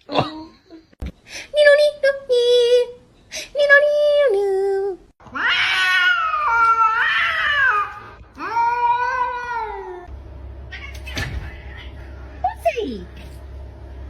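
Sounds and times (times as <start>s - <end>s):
cat meowing: 5.3s - 10.1s, 10.7s - 12.0s.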